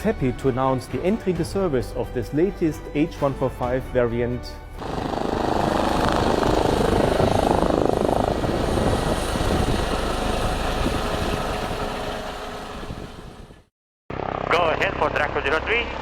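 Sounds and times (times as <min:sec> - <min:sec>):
turbine noise: 0:04.8 - 0:13.7
helicopter rotor beating: 0:04.8 - 0:16.0.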